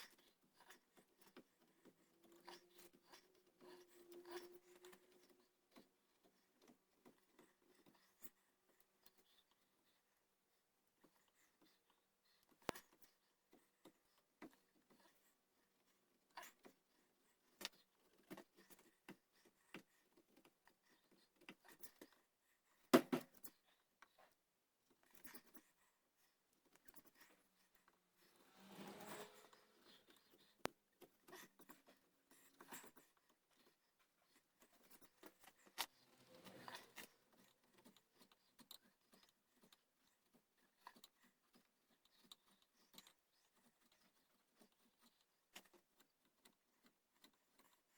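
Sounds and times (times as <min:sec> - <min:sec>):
scraping on wood: 0:28.2 - 0:30.5
scratching and scraping wood: 0:28.2 - 0:30.7, 0:34.8 - 0:38.4.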